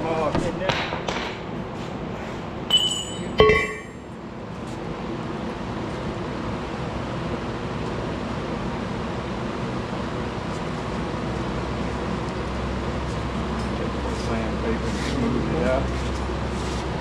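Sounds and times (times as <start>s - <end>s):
steady engine hum: 0.0s - 17.0s
metal-on-metal clanks: 2.7s - 4.0s.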